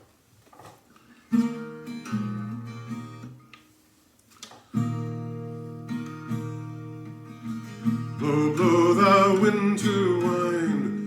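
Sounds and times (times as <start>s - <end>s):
acoustic guitar strumming chords: 1.3s - 3.8s, 4.7s - 11.0s.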